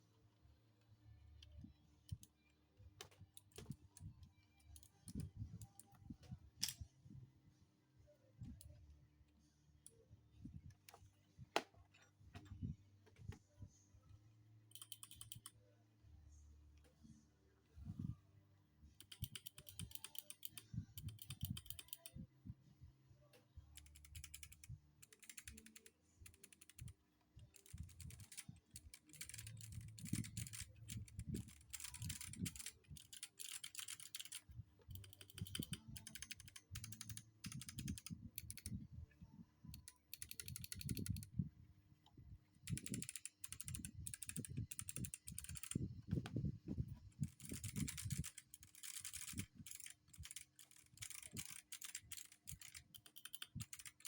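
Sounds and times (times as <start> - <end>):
clicky keyboard typing: 14.7 - 15.5, 19.0 - 22.2, 23.8 - 38.8, 39.7 - 41.3, 42.7 - 46.4, 47.1 - 54.0.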